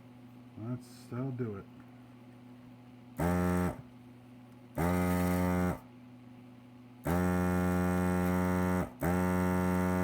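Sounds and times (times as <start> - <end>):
desoldering pump buzzing: 3.1 - 4.0, 4.7 - 6.0, 7.0 - 10.0.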